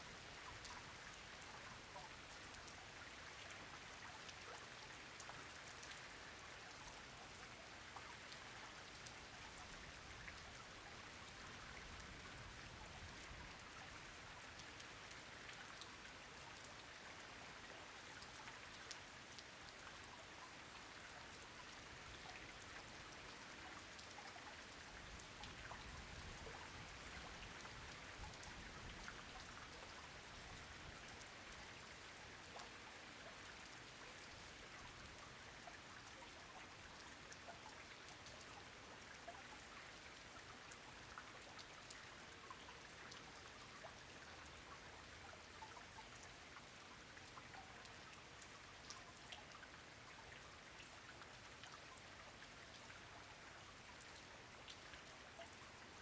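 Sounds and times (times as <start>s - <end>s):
rain falling softly: 0.0s - 56.0s.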